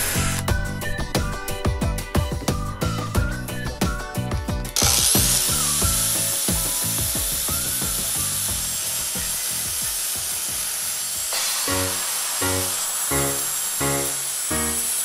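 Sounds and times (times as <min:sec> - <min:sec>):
power grinder grinding steel: 0:00.0 - 0:01.0, 0:04.7 - 0:15.0.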